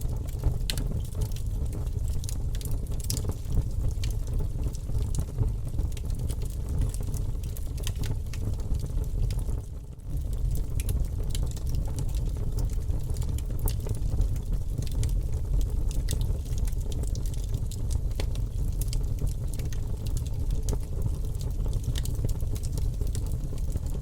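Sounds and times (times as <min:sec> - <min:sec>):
low fire rumble: 0:00.0 - 0:24.0
campfire crackling and popping: 0:00.1 - 0:24.0.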